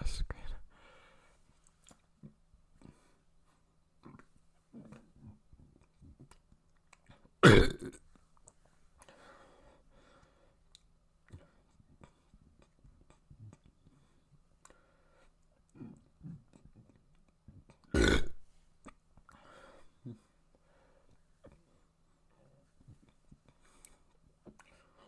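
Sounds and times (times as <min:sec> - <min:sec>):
person burping: 0:07.4 - 0:08.0, 0:17.9 - 0:18.4
faint breathy sound: 0:19.3 - 0:25.0.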